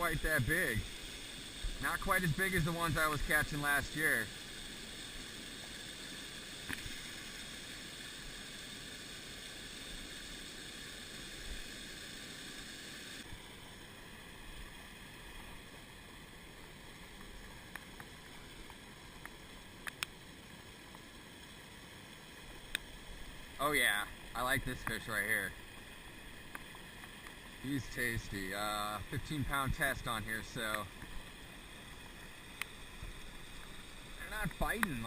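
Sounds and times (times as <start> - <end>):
creek-side hiss: 0.0 - 35.0
faint clicks: 17.2 - 20.2, 22.6 - 22.9, 26.4 - 27.4, 30.6 - 31.3, 32.5 - 33.8.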